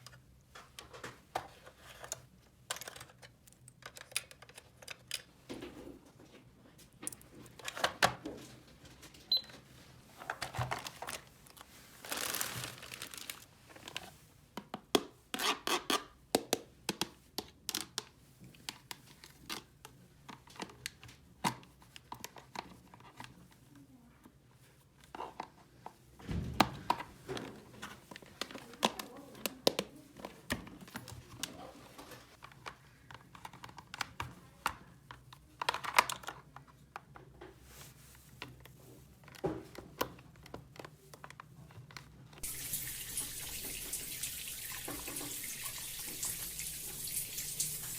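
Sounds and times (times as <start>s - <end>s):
plastic packaging crinkling: 10.4s - 14.0s.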